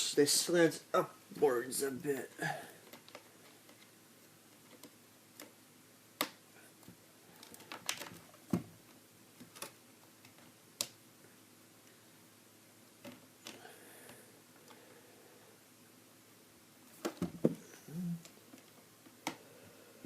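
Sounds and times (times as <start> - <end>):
plastic pieces clicking together: 7.4 - 8.2.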